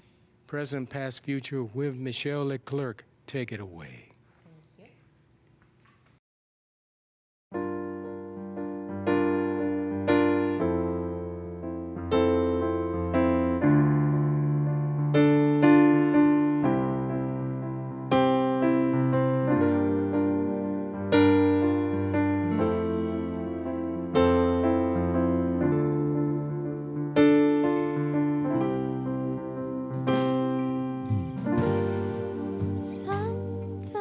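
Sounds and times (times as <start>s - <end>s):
piano chords on keyboard: 7.5s - 34.0s.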